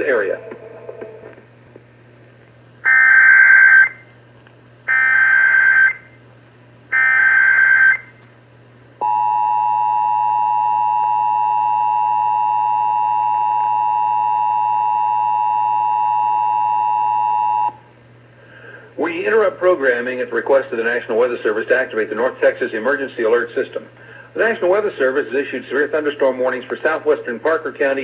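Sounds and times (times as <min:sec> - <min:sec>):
screechy digital data bursts: 0:07.0 - 0:08.0
steady two-tone attention signal: 0:09.0 - 0:17.8.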